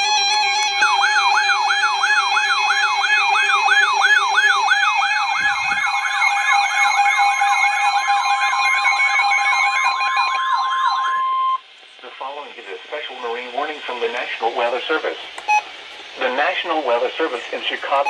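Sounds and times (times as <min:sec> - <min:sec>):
whooping electronic alarm: 0:00.0 - 0:11.6
steady electronic tones: 0:00.0 - 0:18.0.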